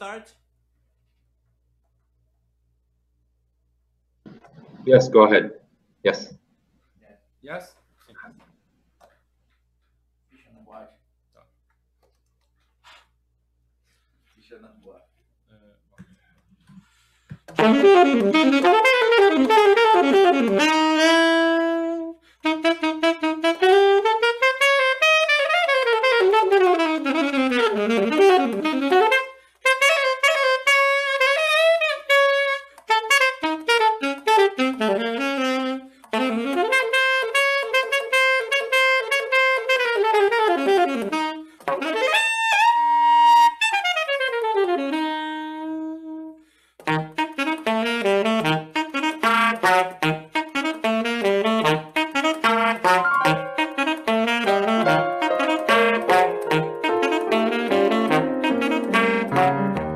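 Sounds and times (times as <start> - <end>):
solo saxophone melody: 17.5 - 59.9.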